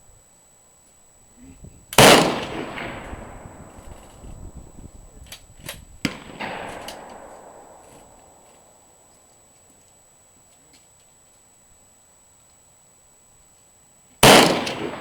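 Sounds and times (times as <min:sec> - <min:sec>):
quieter gunshot echoing: 0:02.0 - 0:04.2, 0:06.0 - 0:08.4, 0:14.2 - 0:15.0
rifle shot echoing: 0:02.0 - 0:04.2, 0:06.0 - 0:08.4, 0:14.2 - 0:15.0.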